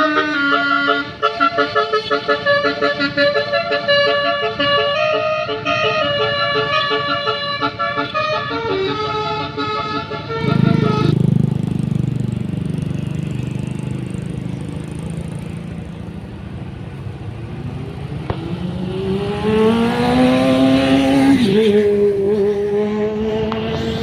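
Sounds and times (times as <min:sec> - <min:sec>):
bus diesel engine accelerating: 0:00.0 - 0:24.0.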